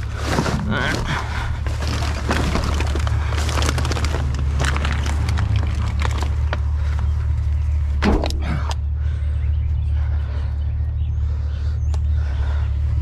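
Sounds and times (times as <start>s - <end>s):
vehicle engine idling: 0.0s - 13.0s
clicks and clatter: 1.7s - 7.1s.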